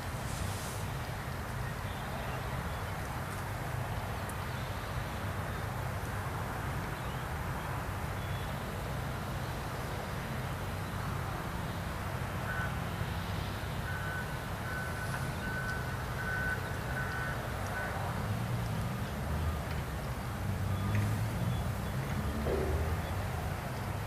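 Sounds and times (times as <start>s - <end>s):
backup alarm beeps: 13.8s - 18.0s.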